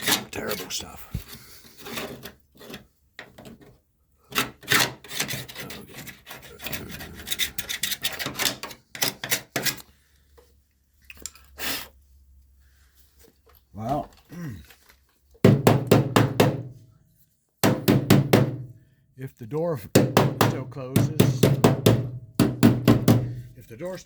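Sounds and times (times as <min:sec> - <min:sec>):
scraping on sheet metal: 0:01.4 - 0:02.8, 0:04.3 - 0:09.8.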